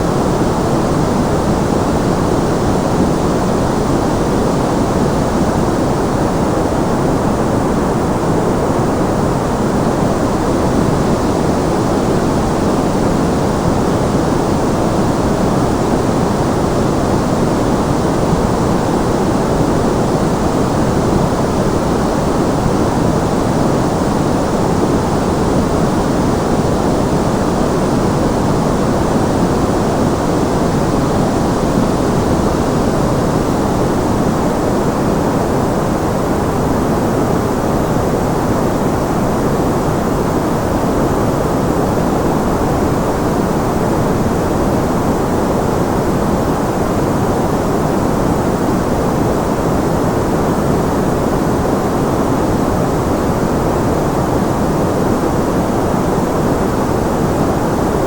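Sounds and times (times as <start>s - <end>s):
electronic white noise: 0.0s - 58.0s.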